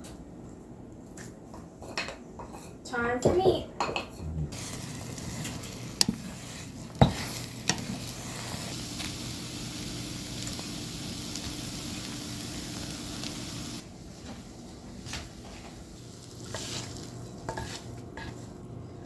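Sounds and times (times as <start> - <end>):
meat sizzling in a pan: 4.6 - 18.6.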